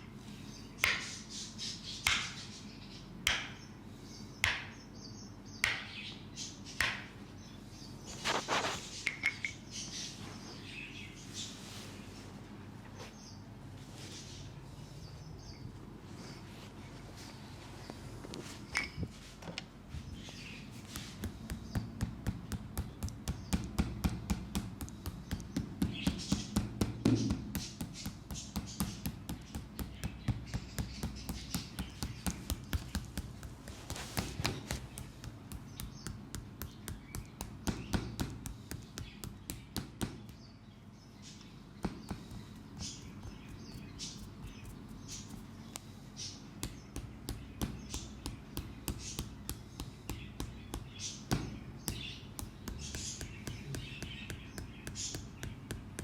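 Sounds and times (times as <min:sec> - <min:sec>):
hands tapping and chopping: 0:00.8 - 0:01.2, 0:02.0 - 0:02.4, 0:03.3 - 0:03.6, 0:04.4 - 0:04.8, 0:05.6 - 0:06.0, 0:06.8 - 0:07.1, 0:20.8 - 0:40.5, 0:41.8 - 0:44.8, 0:46.5 - 0:56.0.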